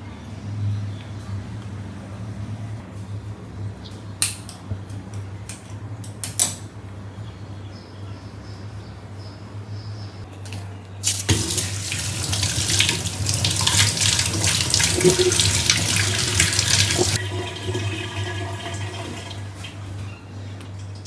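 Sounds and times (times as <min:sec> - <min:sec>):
low steady hum: 0:00.0 - 0:21.0
water running into a sink: 0:11.0 - 0:20.0.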